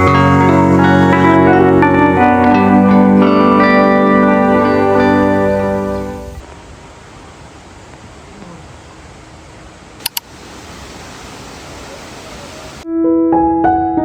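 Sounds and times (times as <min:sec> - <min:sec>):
piano music: 0:00.0 - 0:06.4, 0:12.9 - 0:14.0
rushing outdoor hiss: 0:05.7 - 0:12.8
sharp clicks: 0:10.0 - 0:10.4.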